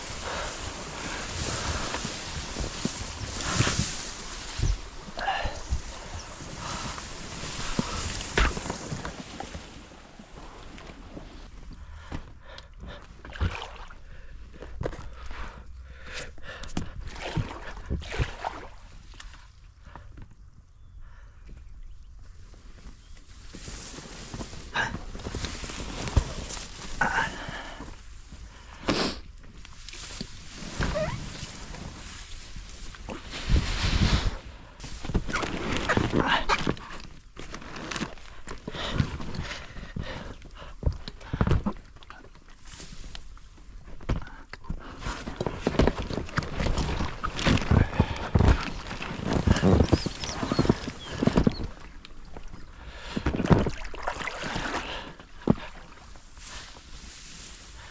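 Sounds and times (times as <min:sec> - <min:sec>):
paddle splashing water: 0:00.0 - 0:11.5, 0:45.3 - 0:57.9
rustling: 0:00.0 - 0:12.2, 0:22.3 - 0:40.3, 0:42.4 - 0:57.9.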